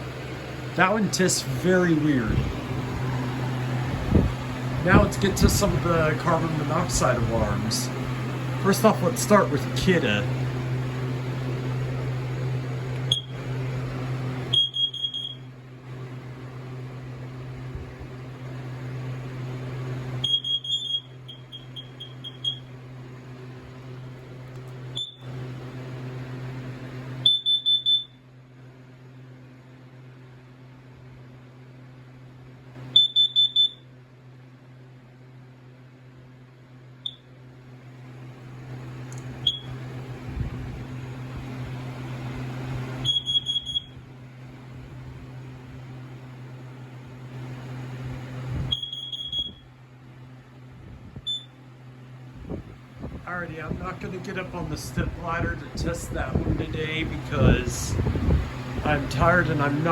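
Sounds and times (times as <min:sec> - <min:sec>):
steady low hum: 0:00.0 - 0:59.9
alarm beeps: 0:13.1 - 0:13.3, 0:14.5 - 0:15.4, 0:20.2 - 0:22.7, 0:27.2 - 0:28.2, 0:32.9 - 0:33.8, 0:39.4 - 0:39.7, 0:43.0 - 0:44.0, 0:48.7 - 0:49.6.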